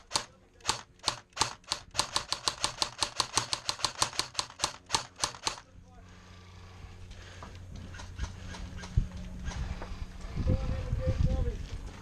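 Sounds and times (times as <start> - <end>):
airsoft guns firing: 0.0 - 5.6.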